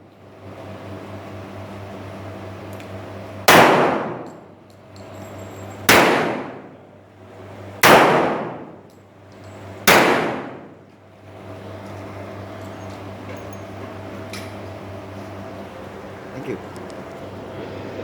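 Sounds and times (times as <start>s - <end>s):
steady low hum: 0.0s - 18.0s
revolver shots with ringing echo: 3.4s - 4.5s, 5.9s - 6.8s, 7.8s - 8.9s, 9.8s - 10.8s.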